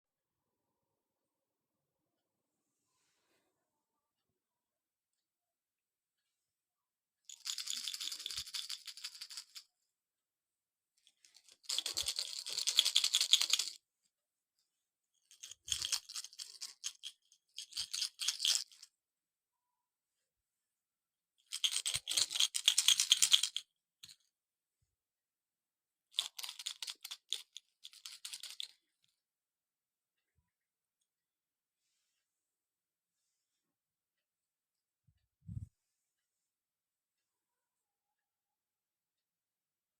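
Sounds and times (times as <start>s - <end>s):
baby rattles shaken: 7.3s - 9.6s, 11.1s - 13.8s, 15.2s - 18.9s, 21.5s - 24.2s, 26.1s - 28.8s.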